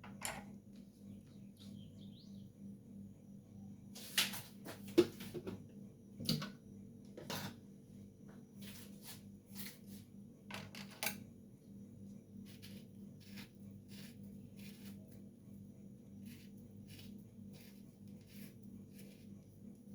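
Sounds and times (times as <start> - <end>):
knife cutting citrus peel: 16.2 - 19.3.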